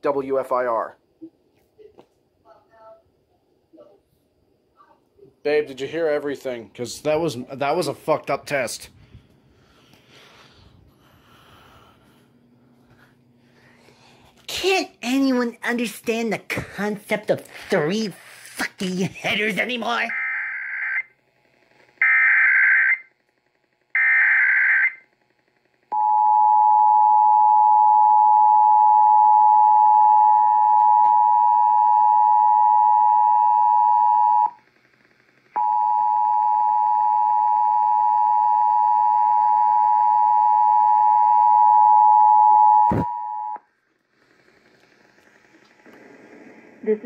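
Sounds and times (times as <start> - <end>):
screeching data bursts: 22.0 - 23.1.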